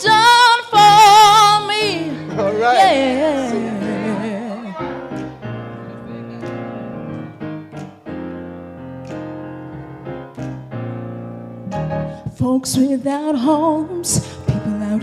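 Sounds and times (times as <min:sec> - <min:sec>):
piano playing sustained chords: 0:00.0 - 0:12.4
percussion hits: 0:04.8 - 0:05.8.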